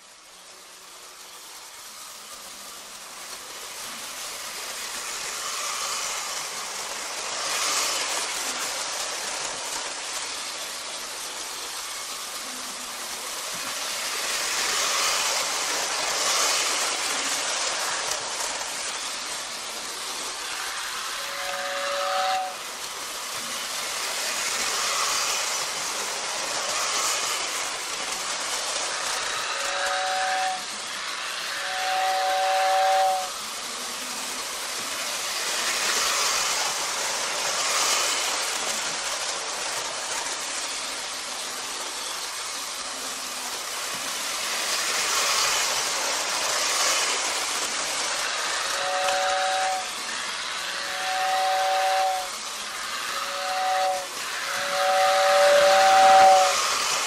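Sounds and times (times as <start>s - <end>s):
toy steam train chuffing: 0.0s - 57.0s
two-note train whistle: 21.2s - 22.7s, 29.3s - 30.8s, 31.4s - 33.4s, 48.6s - 50.0s, 50.7s - 52.4s, 53.2s - 56.7s.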